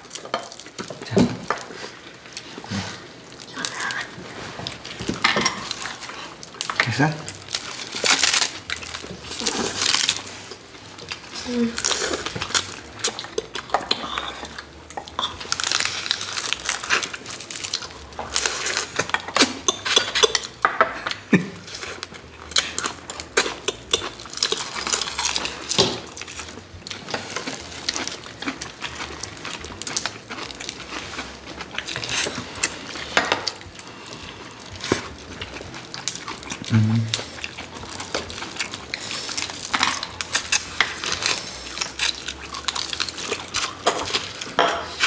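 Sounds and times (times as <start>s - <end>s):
eating clicks and crackles: 0.1s - 45.0s
cutlery clinking on dishes: 5.0s - 7.0s, 18.2s - 21.2s, 43.5s - 45.0s.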